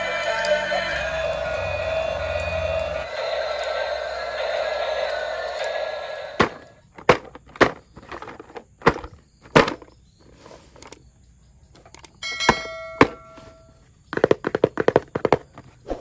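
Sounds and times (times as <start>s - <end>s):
electronic tone: 0.0s - 4.1s
plastic toy parts clicking: 10.8s - 11.0s, 11.7s - 12.2s.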